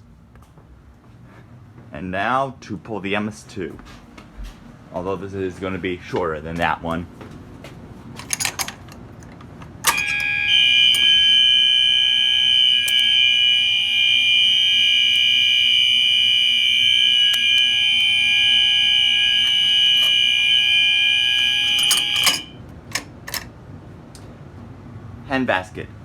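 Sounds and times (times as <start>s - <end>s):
pull station clicks: 8.2s - 11.5s, 12.5s - 13.4s, 16.9s - 23.6s
fire alarm horns: 8.2s - 23.4s
lower alarm horn tone: 9.8s - 22.6s.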